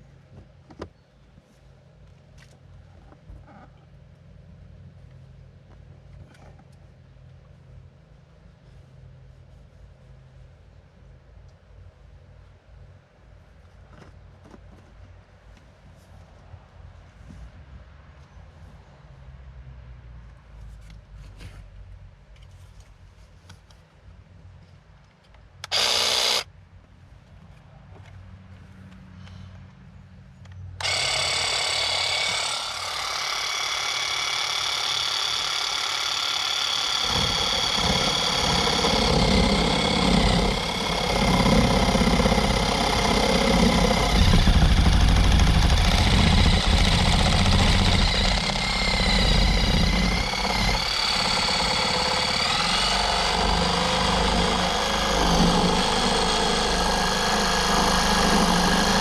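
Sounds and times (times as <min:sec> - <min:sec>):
power cutting tool whining: 0:25.6 - 0:26.4, 0:30.8 - 0:59.0
tool cutting with buzzing vibration: 0:25.6 - 0:26.5, 0:30.8 - 0:59.0.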